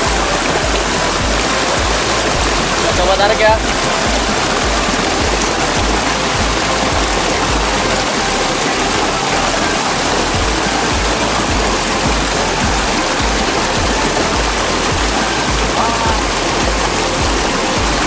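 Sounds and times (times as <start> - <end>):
electronic music with bass beat: 0.0 - 18.0.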